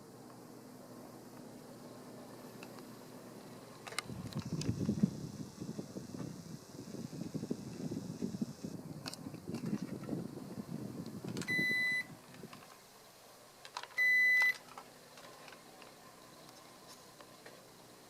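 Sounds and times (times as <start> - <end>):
air conditioner short high beeps: 11.4 - 12.2, 13.9 - 14.7.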